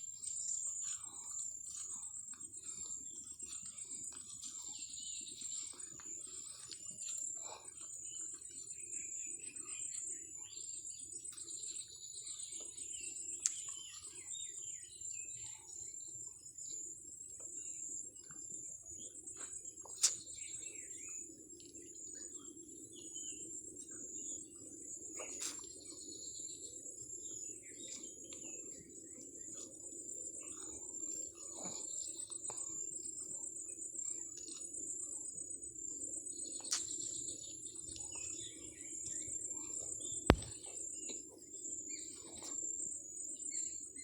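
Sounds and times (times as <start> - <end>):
small birds chirping: 0.0 - 44.0
sharp clicks: 40.3 - 40.5.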